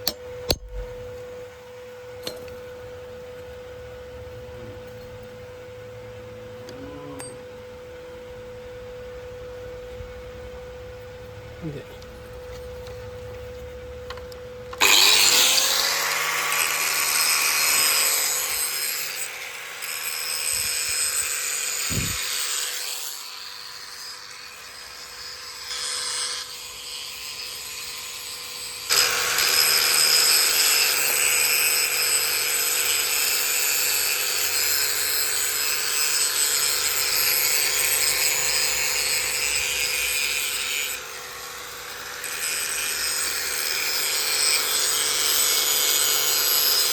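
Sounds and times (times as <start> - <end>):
power tool running: 14.7 - 46.9.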